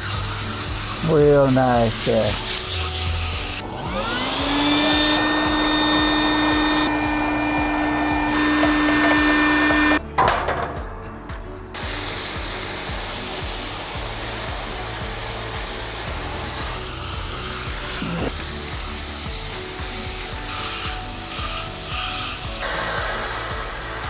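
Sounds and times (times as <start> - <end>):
water spray hissing: 0.0 - 3.6, 11.8 - 24.0
small motor whining: 0.0 - 10.0, 12.9 - 24.0.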